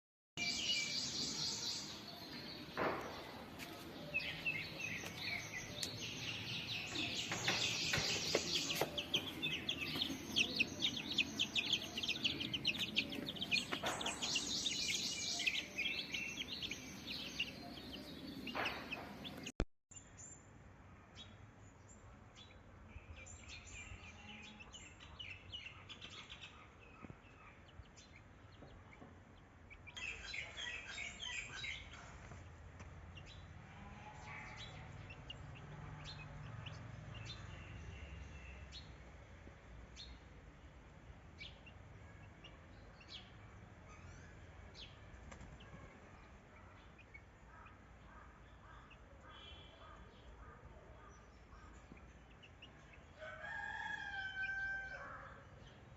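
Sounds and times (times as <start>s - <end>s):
chicks chirping: 0.4s - 19.6s, 34.6s - 38.1s.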